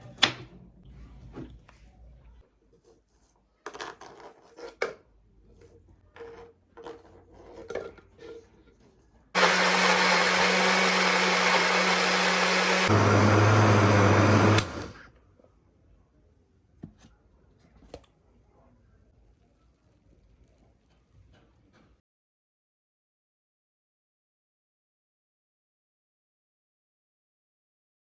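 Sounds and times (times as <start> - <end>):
electric blender running: 9.4 - 15.0.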